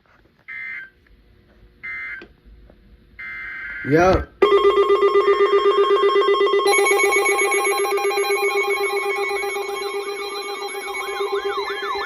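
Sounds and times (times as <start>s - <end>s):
electronic alarm tones: 3.2s - 12.0s
rising and falling warbles: 8.6s - 12.0s.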